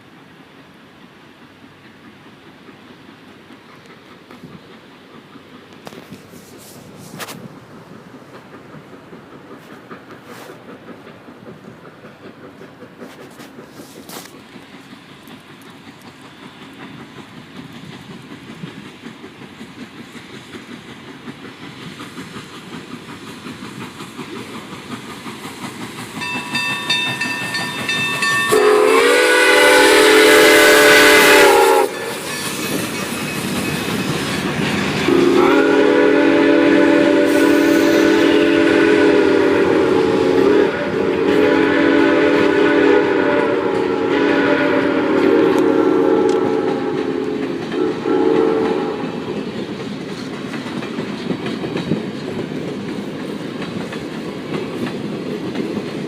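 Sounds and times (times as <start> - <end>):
steam hissing: 0.0 - 56.0
steam locomotive running: 0.0 - 56.0
steam locomotive whistle: 26.2 - 49.4.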